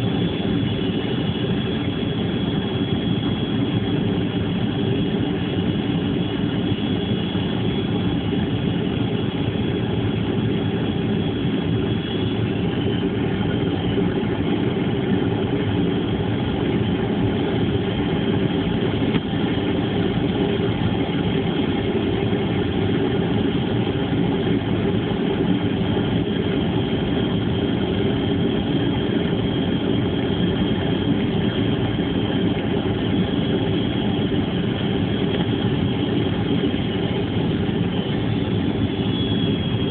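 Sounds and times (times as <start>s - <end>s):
airliner engines droning: 0.0s - 39.9s
thin high whine: 23.8s - 39.9s.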